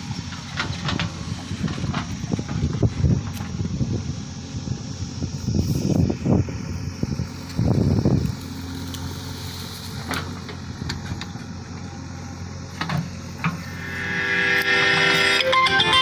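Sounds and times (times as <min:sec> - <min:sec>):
diesel engine running: 0:00.0 - 0:16.0
music: 0:13.8 - 0:16.0.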